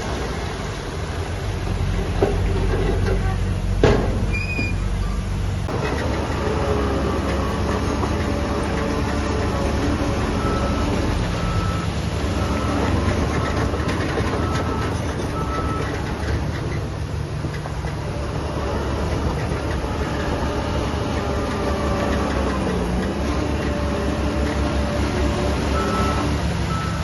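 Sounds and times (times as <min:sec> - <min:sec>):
diesel construction machinery running: 0:00.0 - 0:27.0
reversing alarm beeps: 0:25.8 - 0:27.0.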